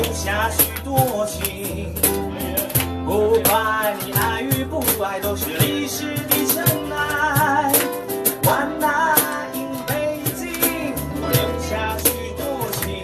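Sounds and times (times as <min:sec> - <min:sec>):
person singing with vibrato: 0:00.0 - 0:13.0
ukuleles strumming: 0:00.0 - 0:13.0.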